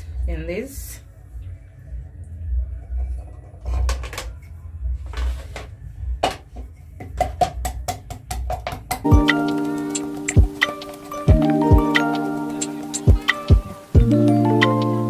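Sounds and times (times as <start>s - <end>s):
bell-like music chords: 9.1s - 15.0s.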